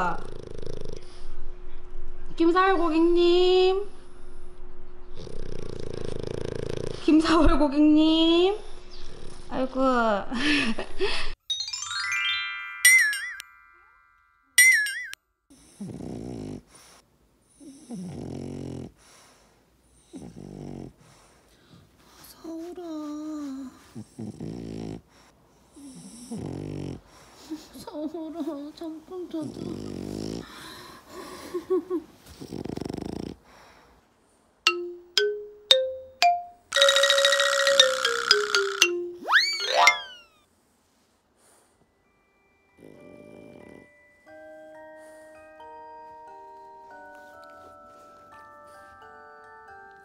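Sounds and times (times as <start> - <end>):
dog snoring: 0.0 - 1.3, 5.1 - 7.2, 15.5 - 21.4, 22.9 - 27.4, 29.3 - 31.0, 32.2 - 33.8, 42.7 - 44.1
rising chime-like tones: 11.5 - 15.2, 34.7 - 40.4
wobbling whistle tones: 36.7 - 40.4.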